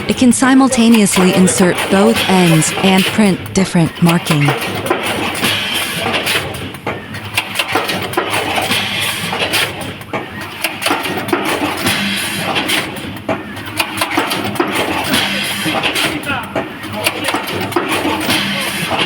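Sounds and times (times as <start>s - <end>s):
machine running with clicks: 4.4s - 19.0s.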